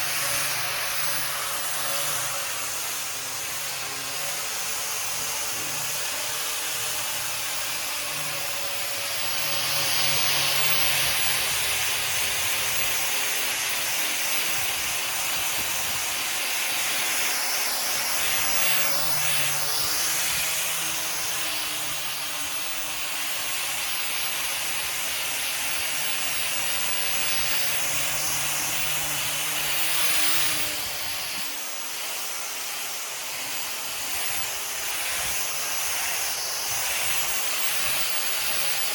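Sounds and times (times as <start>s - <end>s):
sander motor hum: 0.0s - 38.9s.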